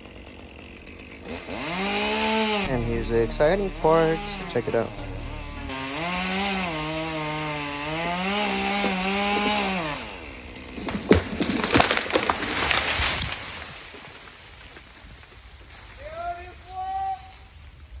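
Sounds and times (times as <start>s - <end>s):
chainsaw cutting at full throttle: 0.0s - 12.3s
branches rushing as tree falls: 10.7s - 16.1s
wood cracking: 10.8s - 15.4s.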